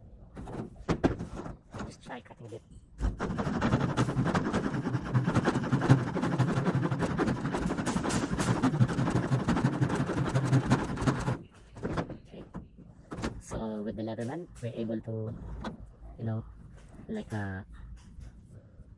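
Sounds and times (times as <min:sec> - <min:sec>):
saw blade sawing wood: 0:03.1 - 0:11.4.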